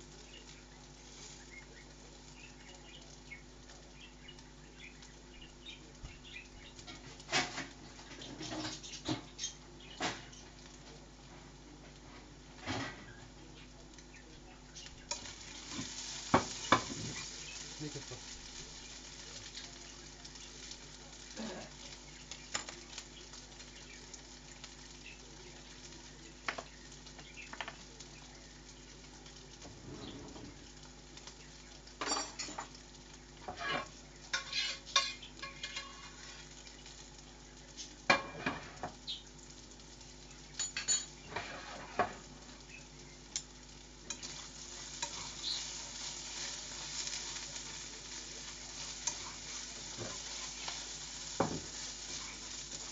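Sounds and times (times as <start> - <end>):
food sizzling in a pan: 0.0 - 52.9
dishes and cutlery clinking: 32.0 - 32.8, 33.4 - 36.2, 38.1 - 38.9, 40.6 - 42.2.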